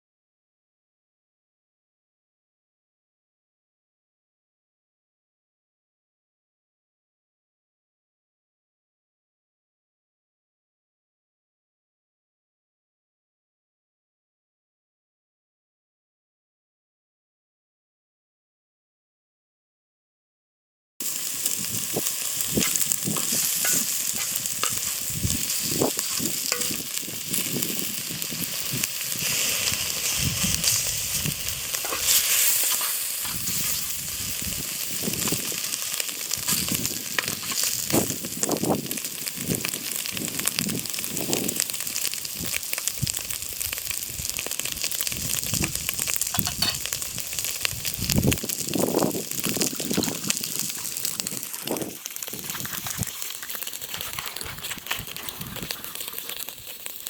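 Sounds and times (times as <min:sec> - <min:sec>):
food sizzling in a pan: 0:21.0 - 0:57.0.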